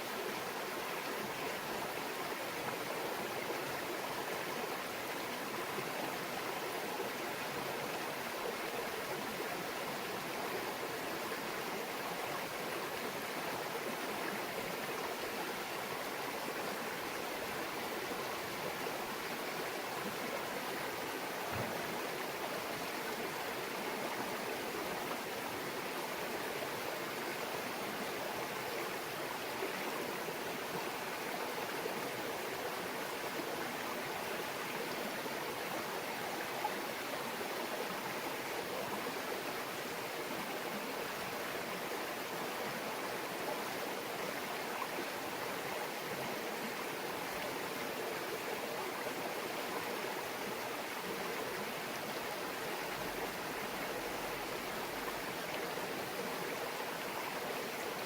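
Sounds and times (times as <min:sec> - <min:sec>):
stream babbling over rocks: 0:00.0 - 0:58.0
faint low thump: 0:21.5 - 0:21.8.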